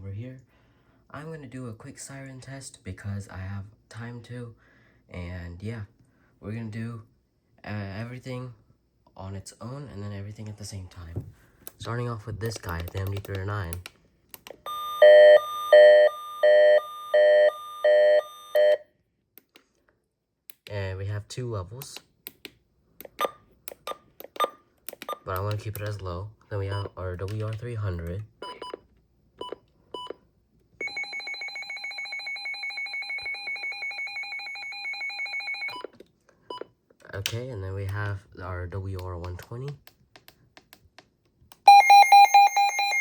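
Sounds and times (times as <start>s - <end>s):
two-tone electronic alarm siren: 14.7s - 18.8s, 41.7s - 43.0s
pulsing electronic alarm tone: 41.7s - 43.0s.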